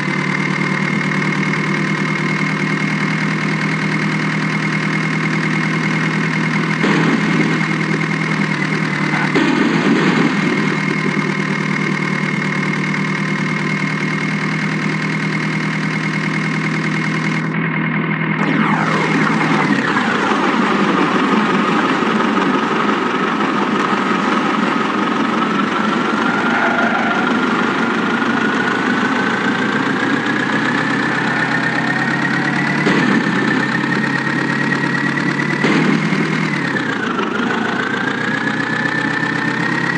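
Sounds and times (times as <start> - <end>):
heavy diesel engine running: 0.0 - 39.9
high whine: 18.4 - 37.1.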